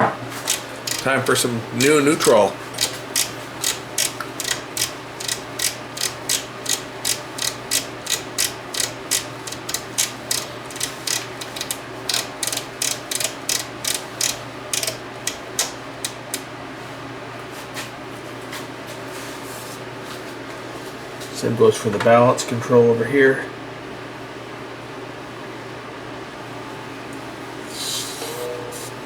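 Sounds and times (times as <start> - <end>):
rotary switch clicking: 0.5 - 16.5.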